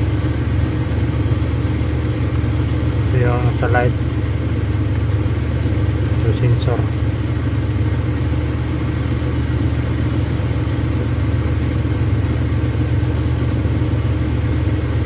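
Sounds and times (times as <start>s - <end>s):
low mechanical hum: 0.0s - 15.0s.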